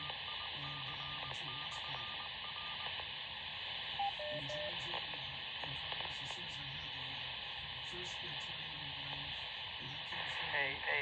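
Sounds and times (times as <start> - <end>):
faint voice: 0.0 - 2.8, 3.8 - 11.0
radio beeps: 0.0 - 3.0, 3.9 - 7.2
radio receiver hiss: 0.0 - 11.0.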